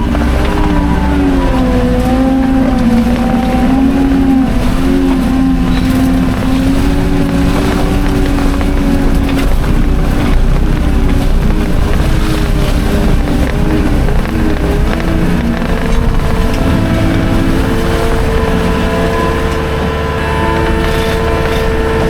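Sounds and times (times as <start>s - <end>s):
skid steer engine running: 0.0s - 22.0s.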